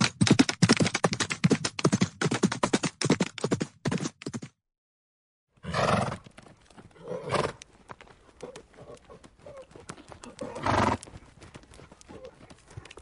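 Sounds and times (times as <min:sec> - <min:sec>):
hoof clopping: 0:05.6 - 0:13.0
horse calling: 0:08.4 - 0:11.1.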